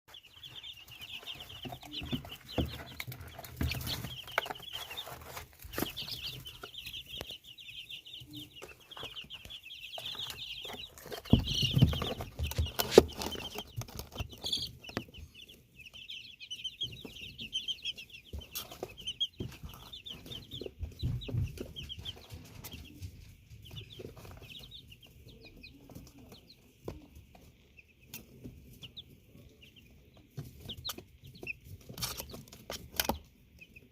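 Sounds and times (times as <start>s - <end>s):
baby chicks peeping: 0.1s - 33.9s
knocks and thumps: 1.2s - 7.4s, 8.7s - 15.3s, 18.2s - 24.6s.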